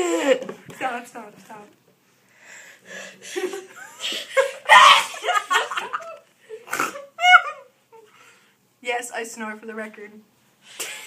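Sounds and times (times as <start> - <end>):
girl giggling and laughing: 3.2 - 8.0.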